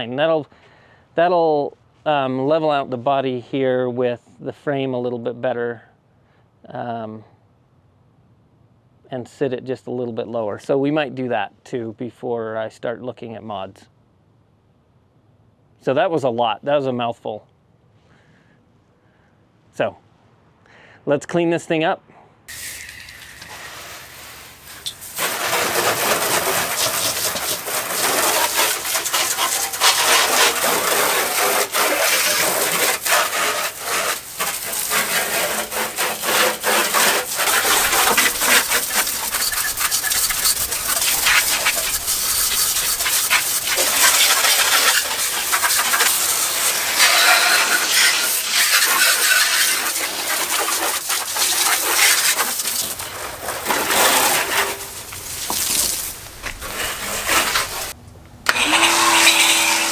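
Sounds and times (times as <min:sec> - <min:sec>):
brush scrubbing a surface: 0:22.5 - 0:58.0, 0:58.6 - 0:59.9.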